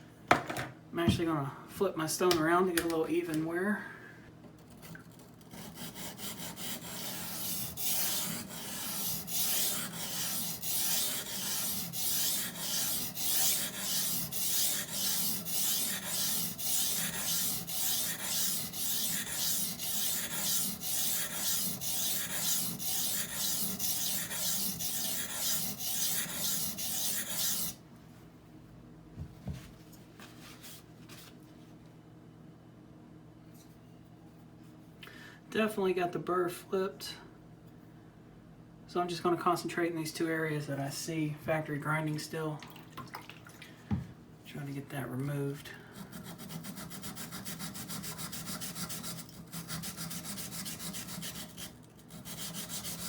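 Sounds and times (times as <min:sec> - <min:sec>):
knife scraping on whetstone: 0:05.5 - 0:27.8, 0:46.1 - 0:53.0.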